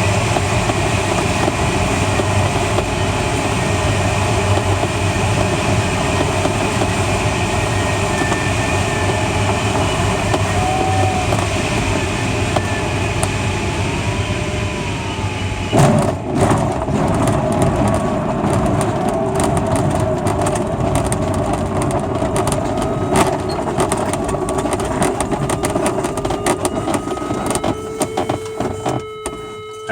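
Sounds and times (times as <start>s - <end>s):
cockpit airflow noise: 0.0s - 29.9s
rumbling and rattling on ground: 0.0s - 29.9s
faint whistle sliding in pitch: 3.0s - 15.8s, 22.5s - 29.9s.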